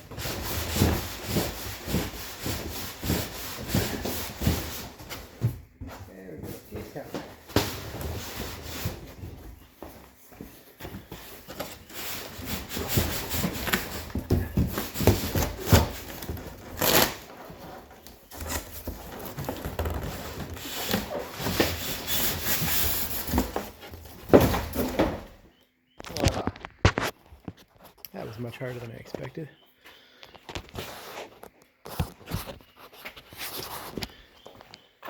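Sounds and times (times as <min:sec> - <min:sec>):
knocks and thumps: 0:18.8 - 0:25.4.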